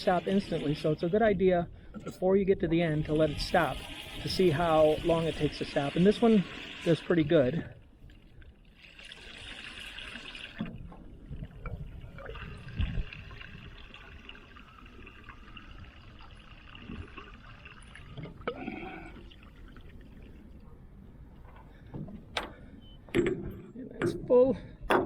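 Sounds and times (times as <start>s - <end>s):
fuel pouring into tank: 3.1s - 20.6s.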